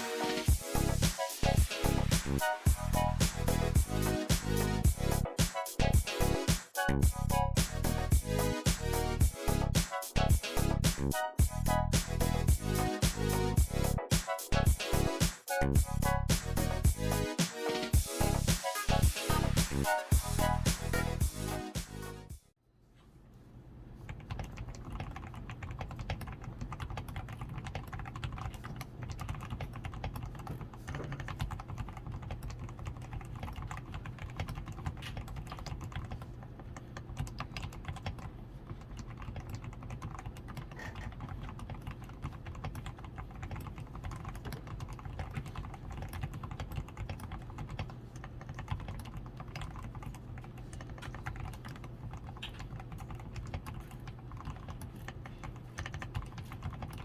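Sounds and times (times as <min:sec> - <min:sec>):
typing on mechanical keyboard: 0:24.1 - 0:57.0.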